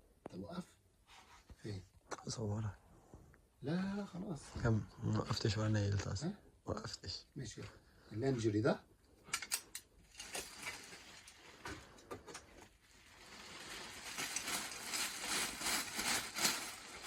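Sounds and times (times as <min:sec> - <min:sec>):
garment rustling: 0:10.0 - 0:11.9, 0:12.5 - 0:17.0.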